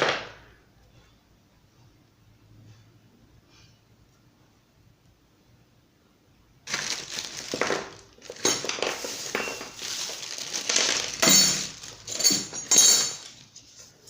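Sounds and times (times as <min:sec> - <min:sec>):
plastic packaging crinkling: 0:06.6 - 0:13.5.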